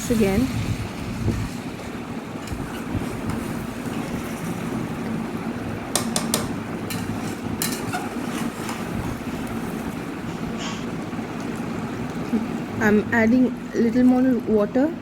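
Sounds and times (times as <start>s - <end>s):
steady low hum: 0.0s - 15.0s
metal spoon scraping a pan: 6.8s - 9.1s.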